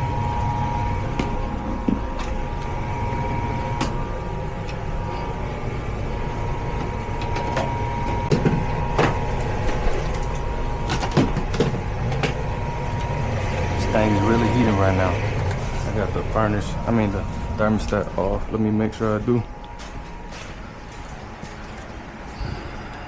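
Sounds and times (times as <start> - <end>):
furnace drone with whine: 0.0 - 23.0.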